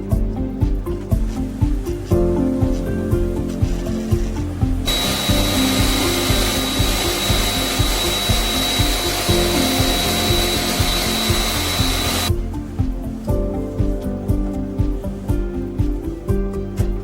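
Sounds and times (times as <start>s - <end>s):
background music with a beat: 0.0s - 17.0s
cleaning machine hiss and whine: 2.8s - 12.4s.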